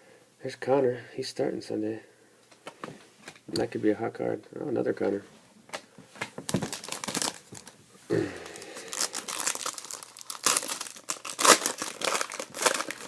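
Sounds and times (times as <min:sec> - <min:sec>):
plastic packaging crinkling: 0:06.3 - 0:13.0.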